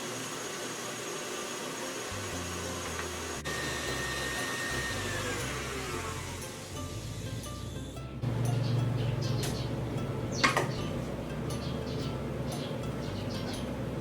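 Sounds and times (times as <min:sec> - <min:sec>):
electric mixer running: 0:00.0 - 0:08.4.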